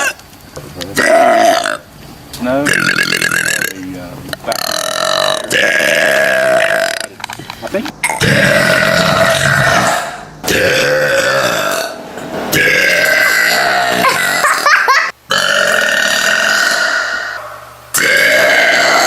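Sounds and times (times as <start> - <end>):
woman belching: 1.0 - 1.8, 2.6 - 7.2, 8.0 - 12.0, 12.6 - 17.4, 18.0 - 19.0.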